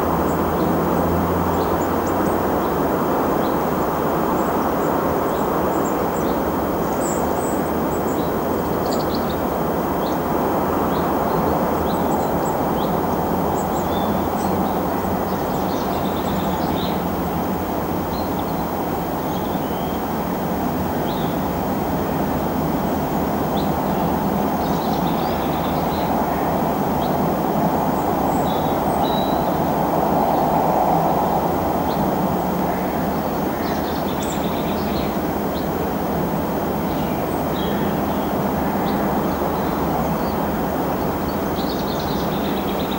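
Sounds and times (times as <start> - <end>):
small birds chirping: 0.3 - 17.2.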